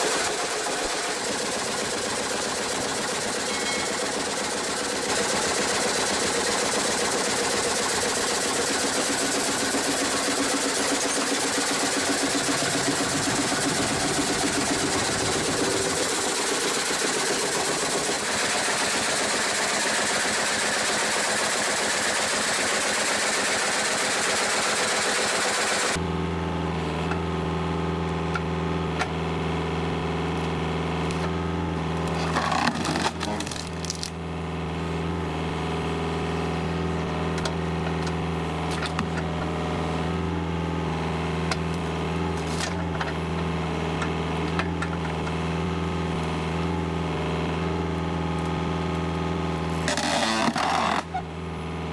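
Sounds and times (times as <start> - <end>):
engine running steadily: 0.0 - 51.9
wood cracking and splintering: 32.2 - 34.2.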